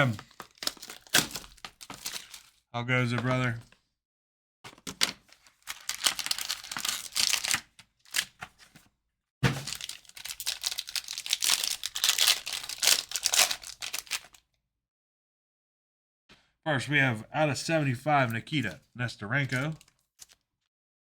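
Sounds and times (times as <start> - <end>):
packaging tearing and crinkling: 0.0 - 2.5, 4.7 - 8.4, 9.6 - 14.4, 19.6 - 20.4.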